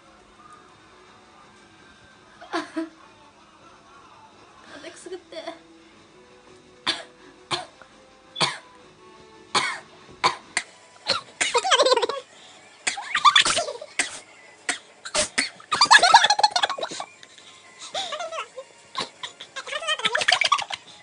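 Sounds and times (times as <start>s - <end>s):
people forcing sneezes: 14.8s - 15.9s.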